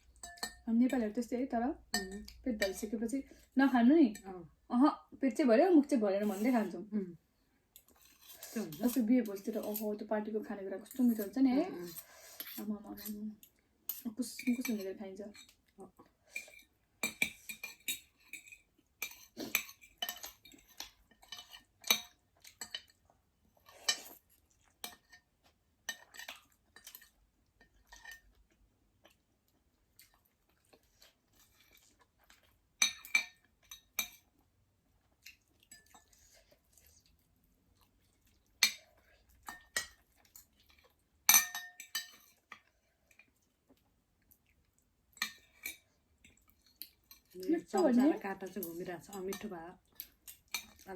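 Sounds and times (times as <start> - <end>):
spoon and fork clinking on bowl: 0.0 - 0.7, 1.9 - 2.9, 16.4 - 23.0, 32.8 - 34.2, 41.3 - 42.5.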